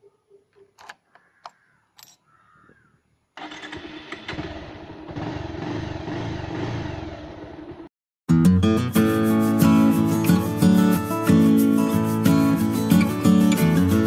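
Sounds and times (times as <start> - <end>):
small clicks: 0.7 - 2.2
motorcycle engine running: 3.4 - 7.9.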